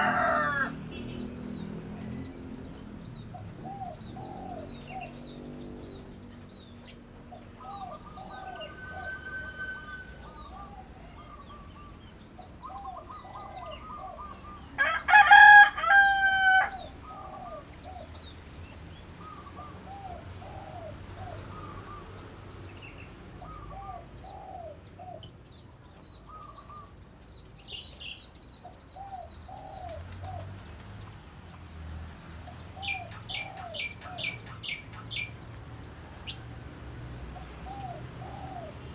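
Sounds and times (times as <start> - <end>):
rooster crowing: 0.0 - 0.9, 7.8 - 11.5, 14.8 - 16.9
birds high chirps: 0.0 - 38.9
bird low arched call: 7.6 - 12.0.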